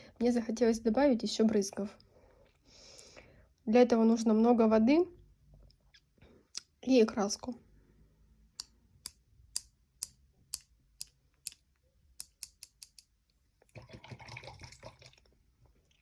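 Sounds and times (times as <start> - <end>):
paintbrush tapping: 12.2 - 13.1.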